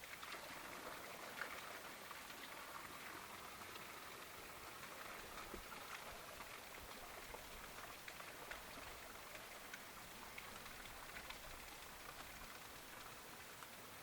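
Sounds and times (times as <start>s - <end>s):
light rain patter: 0.0s - 14.0s.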